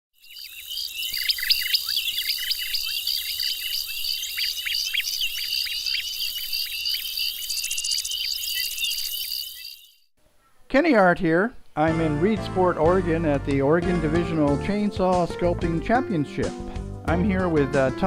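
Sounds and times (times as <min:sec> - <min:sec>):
quick high falling chirps: 0:00.2 - 0:10.1.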